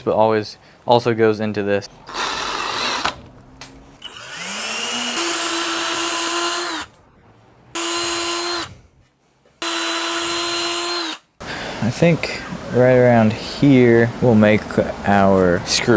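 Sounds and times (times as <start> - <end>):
power drill boring into wood: 2.1 - 3.2, 4.0 - 6.9, 7.8 - 8.7, 9.6 - 11.2.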